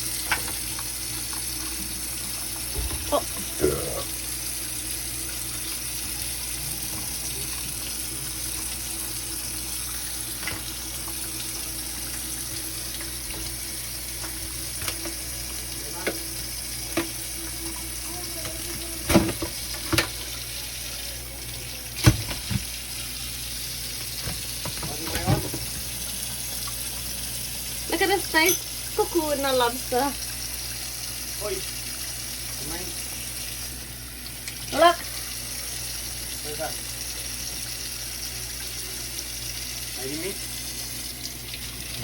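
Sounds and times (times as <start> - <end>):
water running from a tap: 0.0 - 42.0.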